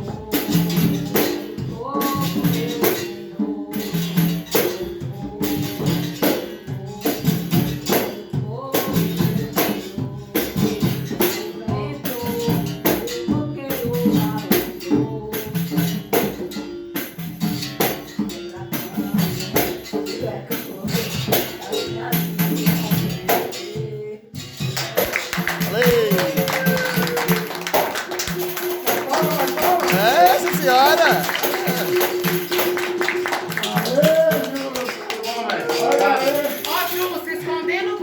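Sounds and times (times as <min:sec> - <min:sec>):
person singing: 0:00.0 - 0:16.4, 0:18.3 - 0:19.8, 0:20.4 - 0:28.0
berimbau rhythm: 0:00.0 - 0:38.0
sharp percussion strikes: 0:24.4 - 0:37.4.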